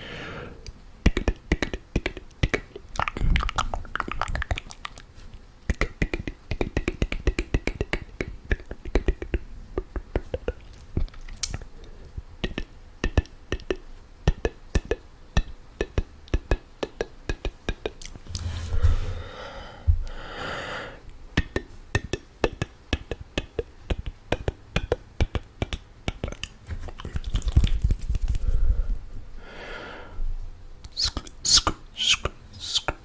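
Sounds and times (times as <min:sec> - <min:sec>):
wet mouth clicks and pops: 0:01.1 - 0:05.0, 0:05.7 - 0:11.6, 0:12.4 - 0:15.0, 0:22.0 - 0:28.2
breath rumble on microphone: 0:18.2 - 0:20.2, 0:27.6 - 0:29.3.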